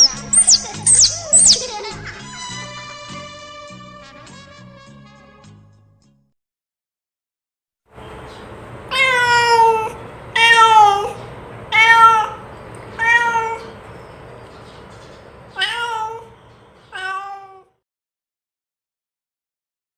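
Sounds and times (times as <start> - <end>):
cat meowing: 8.9 - 13.8, 15.5 - 17.8.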